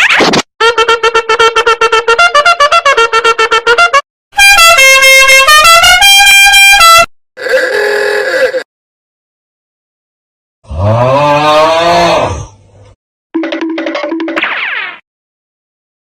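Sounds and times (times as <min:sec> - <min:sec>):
blaring horn-like tune: 0:00.6 - 0:07.1.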